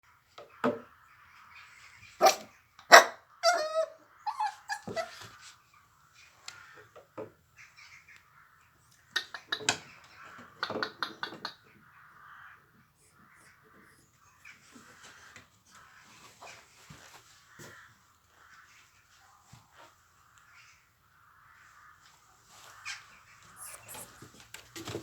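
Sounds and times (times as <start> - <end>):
puppies yapping and whining: 3.0 - 5.4, 23.6 - 24.2.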